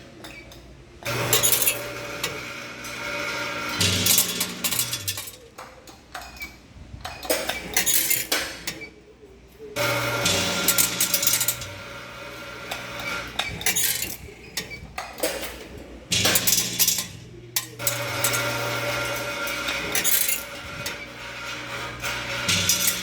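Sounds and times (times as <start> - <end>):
seeds rattling on metal trays: 3.7 - 5.4, 10.3 - 11.8, 16.1 - 20.6, 22.2 - 23.0.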